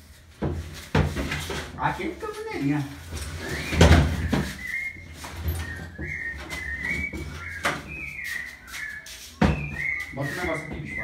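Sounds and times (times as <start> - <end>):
person whistling a tune: 3.4 - 11.0.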